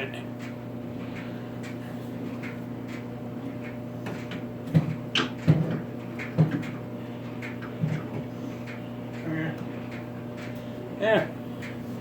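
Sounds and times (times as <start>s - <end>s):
steady low hum: 0.0s - 12.0s
hard objects knocking and clunking: 4.0s - 6.8s.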